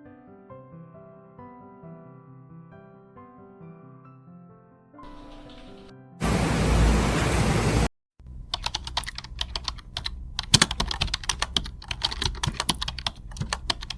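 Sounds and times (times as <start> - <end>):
loud rushing noise: 6.2 - 7.9
rapid irregular clicking: 8.5 - 13.9.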